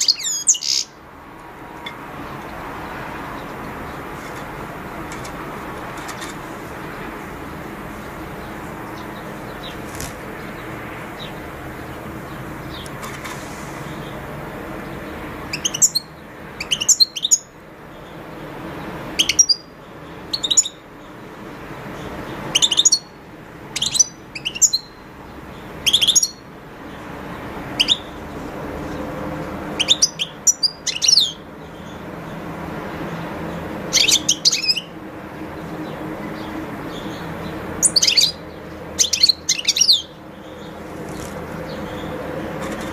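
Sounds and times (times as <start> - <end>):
bird twittering chirps: 0.0 - 1.0, 14.8 - 18.2, 19.2 - 20.8, 22.0 - 23.1, 23.7 - 26.5, 27.8 - 28.2, 29.8 - 32.0, 33.1 - 35.0, 35.6 - 42.9.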